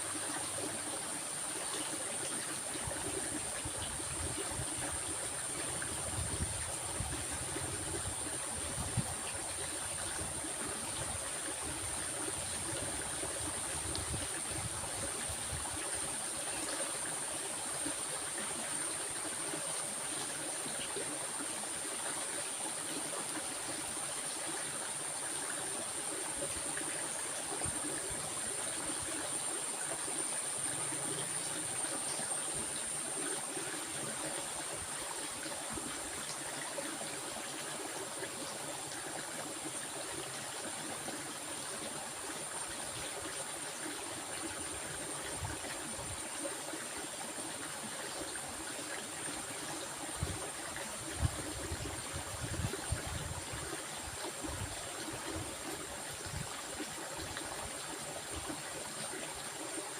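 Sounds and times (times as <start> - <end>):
stream water trickling: 0.0 - 59.9.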